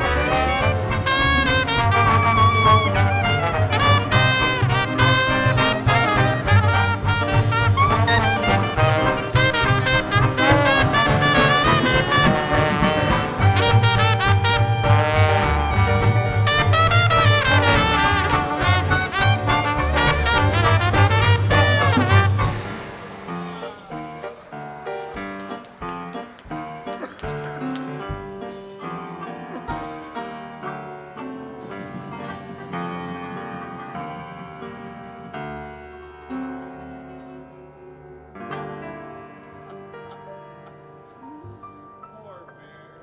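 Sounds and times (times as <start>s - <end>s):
walking bass line: 0.0s - 22.8s
trombone: 0.0s - 24.3s, 27.0s - 37.7s
trumpet: 0.0s - 24.6s, 27.0s - 39.0s
jazz band playing: 0.0s - 39.5s.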